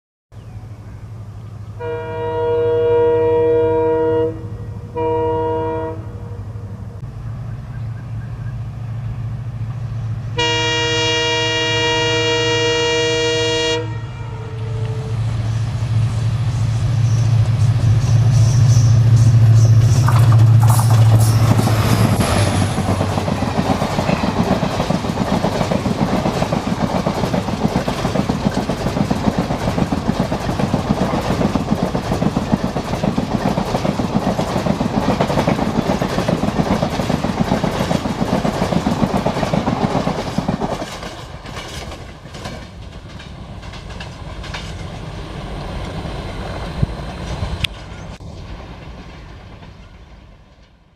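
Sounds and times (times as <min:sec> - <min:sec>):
diesel locomotive engine droning: 0:00.4 - 0:50.9
multi-tone air horn blast: 0:01.8 - 0:07.0, 0:10.4 - 0:15.3
train coaches rushing by: 0:07.1 - 0:50.9
wheels clacking over rail joints: 0:17.0 - 0:50.8.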